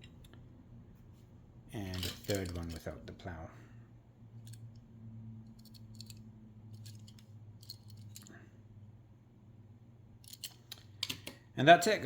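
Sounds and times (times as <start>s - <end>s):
steady low hum: 0.0s - 12.0s
metal toy cars clicking: 1.9s - 2.9s, 5.5s - 8.4s, 10.2s - 11.4s.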